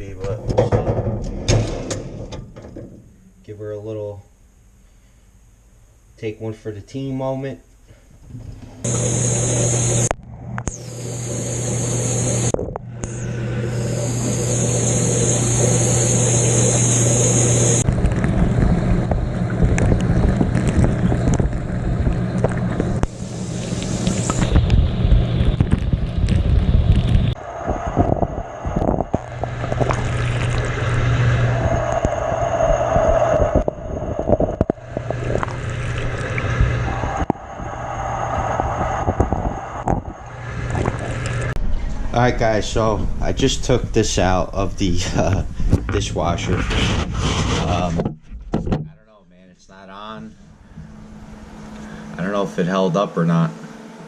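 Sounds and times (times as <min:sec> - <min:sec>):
dishwasher pump motor humming: 0:08.8 - 0:41.6.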